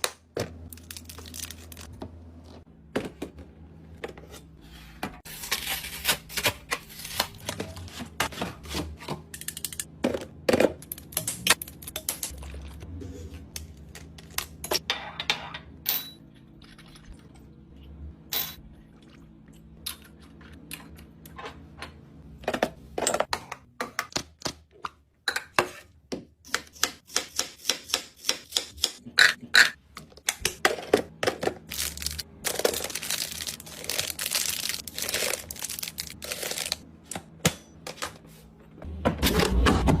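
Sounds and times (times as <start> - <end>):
plastic packaging crinkling: 0.7 - 1.9, 31.6 - 36.8.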